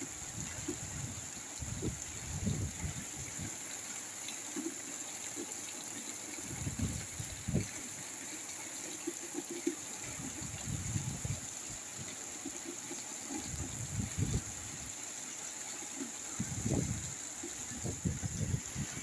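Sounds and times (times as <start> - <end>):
rain hissing: 0.0 - 19.0
wind buffeting microphone: 0.3 - 3.5, 6.4 - 7.8, 10.0 - 12.1, 13.3 - 14.9, 16.3 - 19.0.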